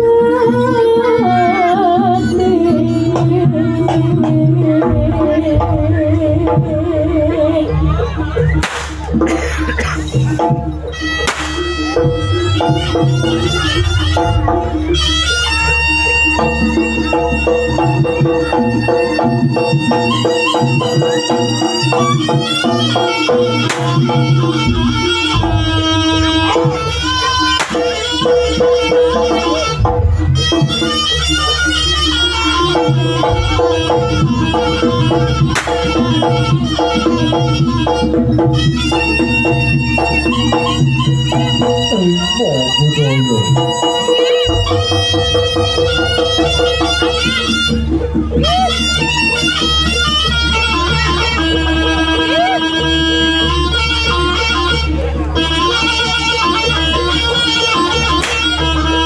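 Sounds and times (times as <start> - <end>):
pulsing low drum beat: 0.0 - 31.4
high held melody line: 0.0 - 59.0
metal percussion pattern: 8.0 - 59.0.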